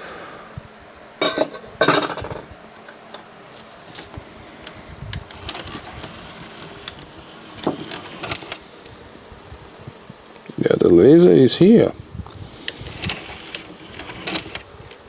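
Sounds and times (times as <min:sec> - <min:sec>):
faint steady hum: 0:00.0 - 0:15.0
disc drive clicks and clacks: 0:01.3 - 0:09.0, 0:12.2 - 0:15.0.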